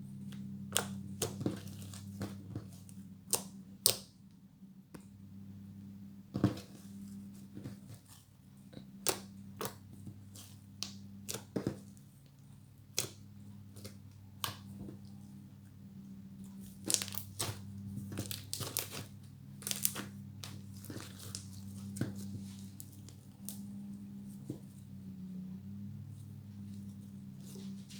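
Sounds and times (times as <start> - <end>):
slime clicking and crackling: 16.7 - 21.8.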